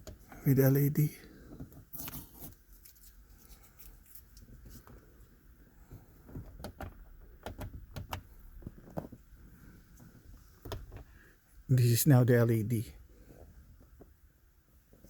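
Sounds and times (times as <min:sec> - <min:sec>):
faint clicks and knocks: 0:05.9 - 0:09.3, 0:09.9 - 0:11.2.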